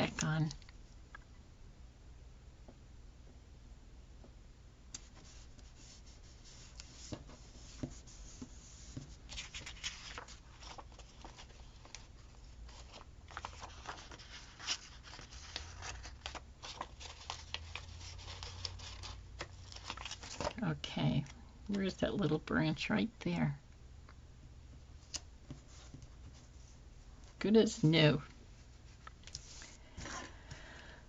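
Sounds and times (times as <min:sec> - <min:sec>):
paper stickers rustling and tapping: 0:06.6 - 0:20.6.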